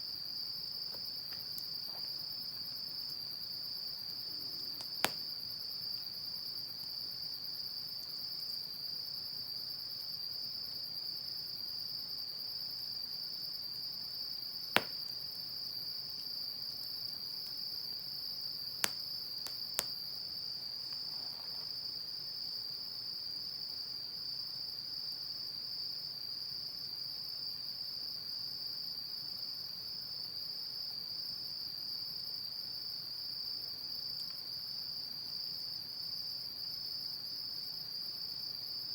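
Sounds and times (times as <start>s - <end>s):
wood fire popping: 4.4s - 5.3s, 14.8s - 15.1s, 18.8s - 20.0s.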